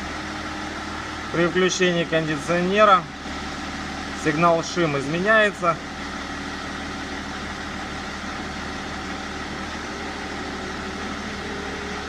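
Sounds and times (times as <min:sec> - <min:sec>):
car engine idling: 0:00.0 - 0:12.0
fan tone rising in pitch: 0:06.2 - 0:12.0.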